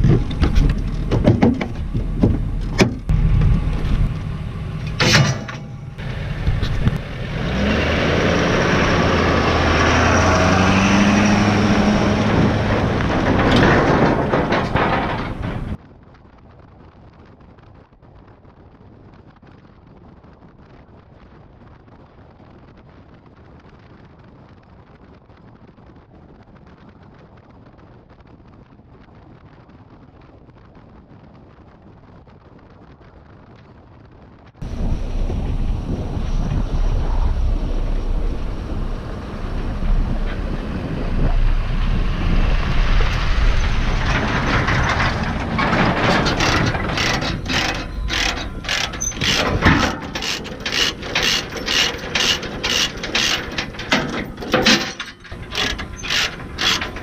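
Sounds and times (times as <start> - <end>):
mechanical clacking: 0.0 - 7.5, 8.6 - 15.8, 34.6 - 57.0
low hum: 0.0 - 15.8, 34.6 - 57.0
machinery rumbling: 0.0 - 15.8, 34.6 - 57.0.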